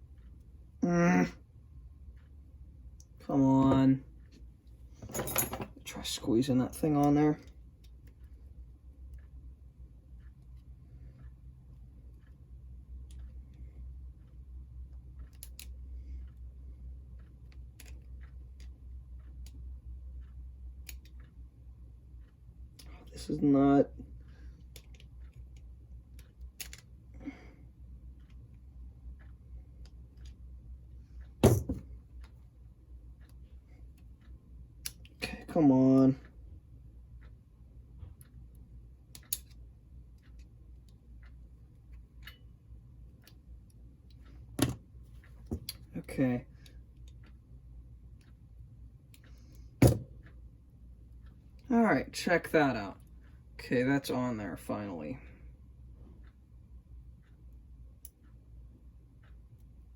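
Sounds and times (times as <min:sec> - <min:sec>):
steady low hum: 0:00.0 - 0:59.9
small clicks and taps of parts: 0:02.1 - 0:23.4, 0:24.0 - 0:51.7, 0:55.9 - 0:59.9.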